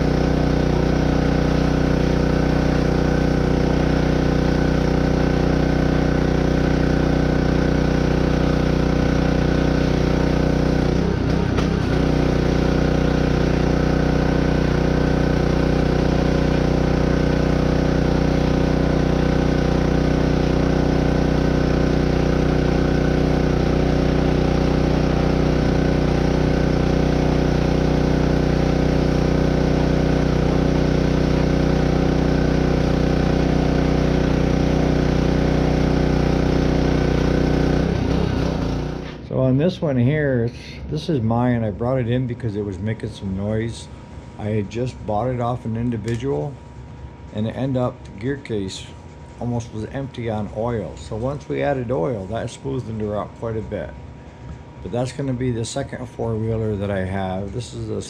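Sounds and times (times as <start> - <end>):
engine idling: 0.0 - 39.3.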